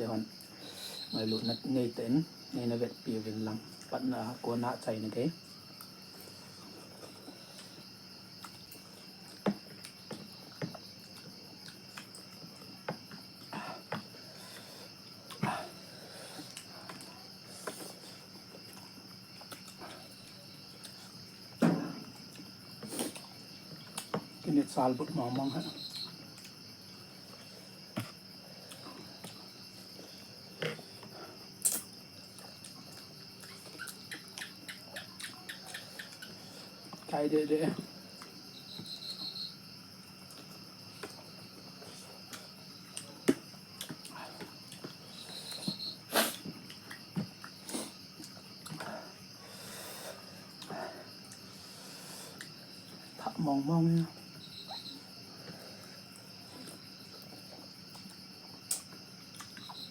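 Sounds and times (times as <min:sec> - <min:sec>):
crickets trilling: 0:00.0 - 0:59.9
small mouth clicks: 0:31.6 - 0:31.9, 0:33.4 - 0:36.3.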